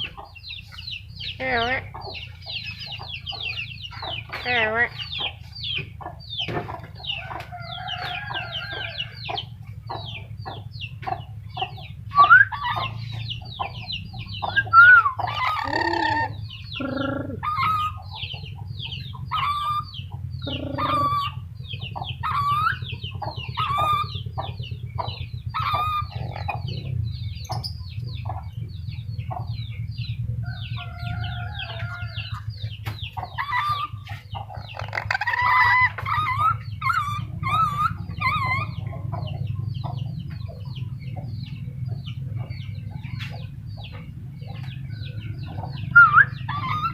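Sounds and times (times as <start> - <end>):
steady low hum: 0.0 - 46.9
parrot chattering and squawking: 1.4 - 2.0, 4.4 - 5.2, 14.5 - 18.0, 19.3 - 21.4, 22.2 - 22.9, 25.5 - 26.7, 33.3 - 38.8, 46.0 - 46.9.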